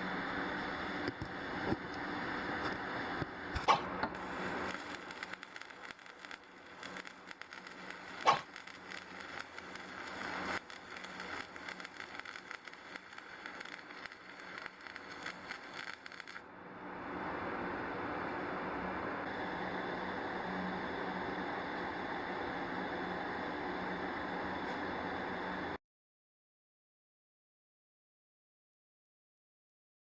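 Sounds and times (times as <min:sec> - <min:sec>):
welding arc crackling: 0:00.0 - 0:16.4
welding arc pop: 0:01.0 - 0:16.4.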